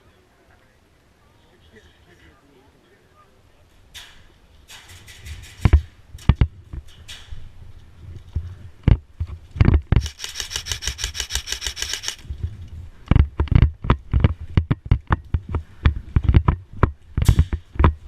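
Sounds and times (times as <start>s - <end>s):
irregular knocks and thumps: 8.3s - 10.0s, 12.4s - 18.0s
airsoft gun full-auto burst: 10.0s - 12.2s.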